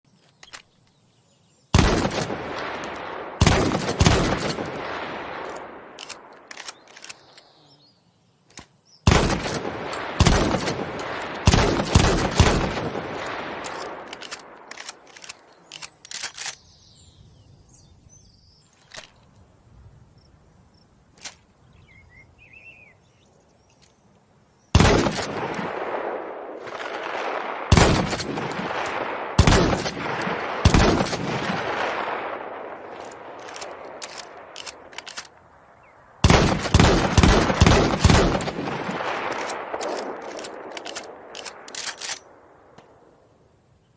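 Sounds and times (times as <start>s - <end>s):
sharp small clicks: 0.1s - 1.0s, 5.4s - 7.6s, 8.4s - 16.7s, 21.1s - 21.5s, 32.9s - 35.5s, 36.3s - 43.0s
shotgun shots echoing: 1.8s - 7.2s, 9.1s - 16.4s, 24.8s - 35.4s, 36.2s - 43.0s.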